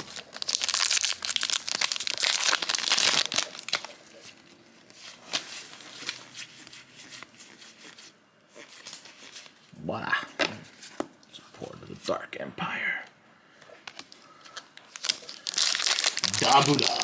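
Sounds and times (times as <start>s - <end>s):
wrapper crinkling as torn open: 0.0s - 4.1s, 13.9s - 17.0s.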